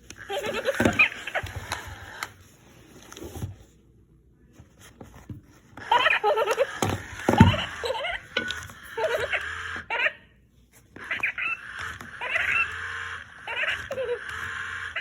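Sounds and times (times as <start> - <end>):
doll baby voice giggling: 0.2 - 1.8, 5.9 - 10.3, 11.0 - 15.0.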